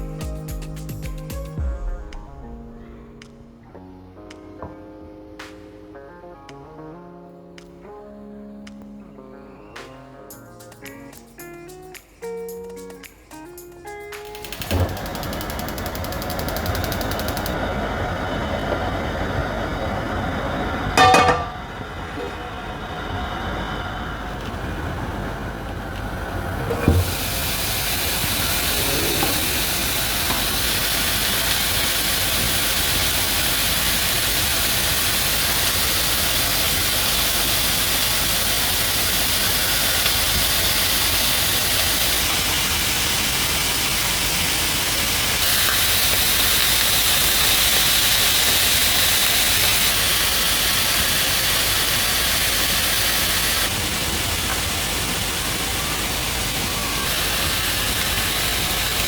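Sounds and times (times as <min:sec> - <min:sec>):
food sizzling in frying pan: 0:27.0 - 0:59.0.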